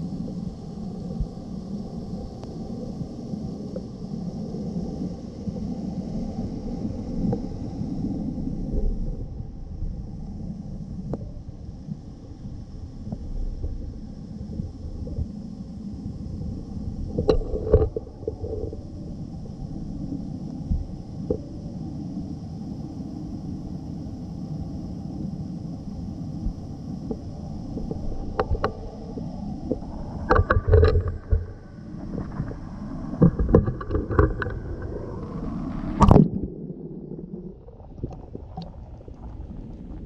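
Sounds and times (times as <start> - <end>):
muffled underwater stream rumble: 0.0 - 40.0.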